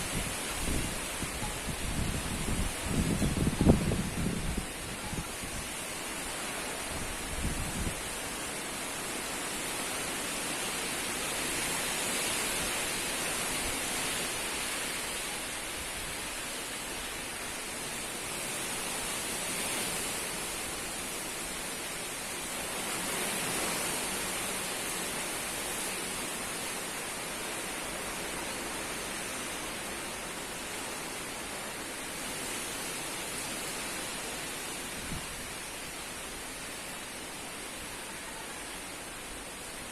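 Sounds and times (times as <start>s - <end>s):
strong gusty wind: 0.0s - 8.9s, 31.4s - 37.8s.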